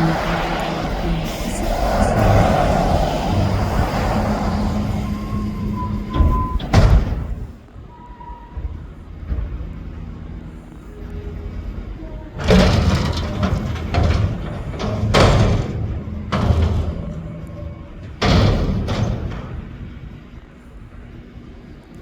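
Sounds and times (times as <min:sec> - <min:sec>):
heavy metallic bangs and clatters: 0:00.0 - 0:07.6, 0:12.5 - 0:20.1
garbage truck diesel engine: 0:00.0 - 0:21.7.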